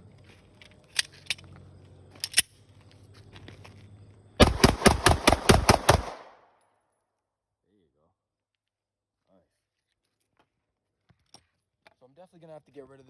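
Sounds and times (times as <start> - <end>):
pistol shots: 4.4 - 6.4.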